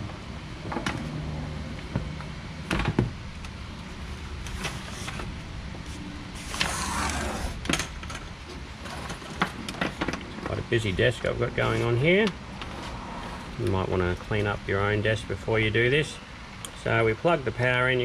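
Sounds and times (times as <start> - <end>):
rustling scrape: 4.5 - 7.6, 8.8 - 10.0, 12.6 - 13.6.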